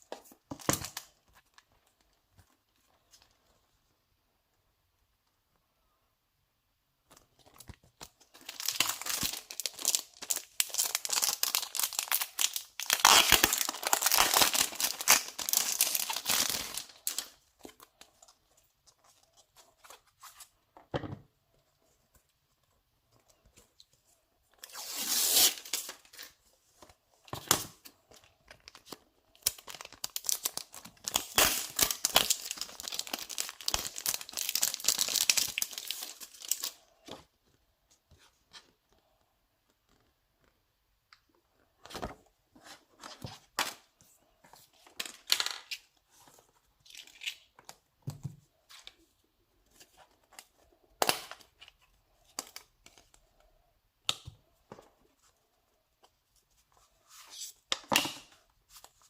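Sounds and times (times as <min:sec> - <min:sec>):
packaging ripping and rustling: 0:07.6 - 0:17.8, 0:24.6 - 0:26.4, 0:28.6 - 0:36.8.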